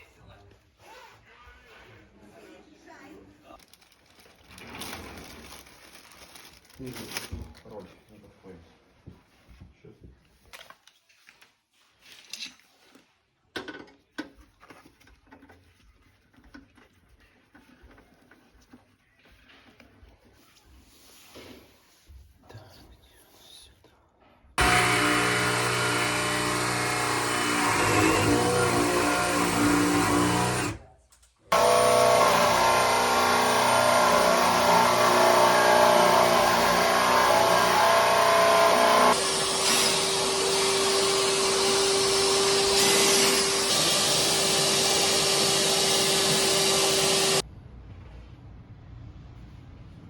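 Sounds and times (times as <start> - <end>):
small electric motor whining: 24.6 - 30.8, 31.5 - 47.4.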